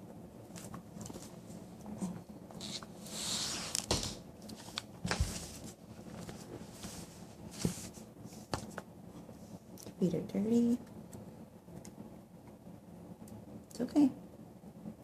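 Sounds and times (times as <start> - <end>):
rustling and handling noise: 0.4 - 10.0.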